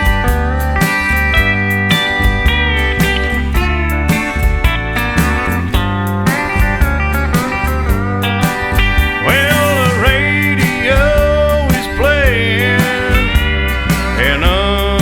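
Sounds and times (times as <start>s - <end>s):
country music: 0.0s - 15.0s
steel guitar sliding: 0.0s - 15.0s.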